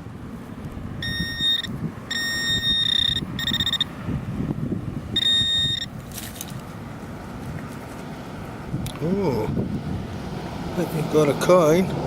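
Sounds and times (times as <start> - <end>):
metal detector beeping: 1.0 - 3.9, 5.2 - 5.9.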